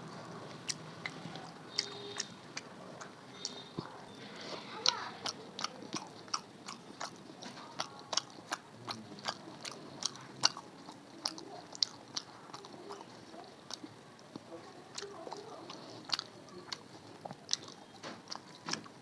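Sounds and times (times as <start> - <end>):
wet mouth clicks and smacks: 0.5 - 4.0, 5.2 - 13.0.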